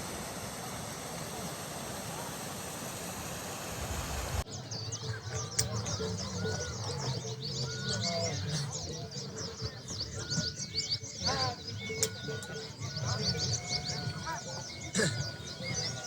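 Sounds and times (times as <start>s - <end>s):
small birds chirping: 4.4s - 16.0s.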